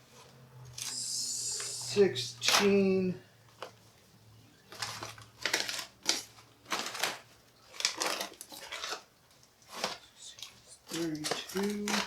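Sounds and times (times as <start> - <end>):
rustling clattering handling noises: 3.4 - 12.0.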